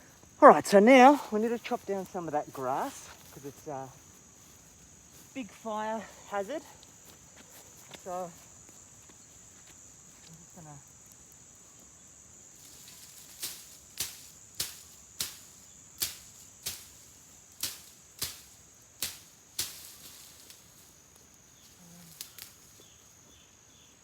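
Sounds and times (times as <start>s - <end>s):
high-pitched insect drone: 0.0s - 23.9s
blade chopping through grass: 12.8s - 20.7s.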